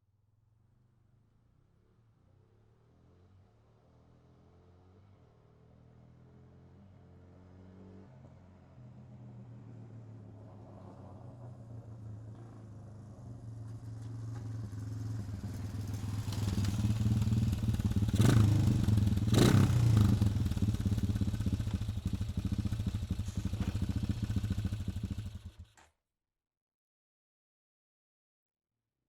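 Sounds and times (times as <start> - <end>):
quad bike engine passing: 2.8 - 25.8.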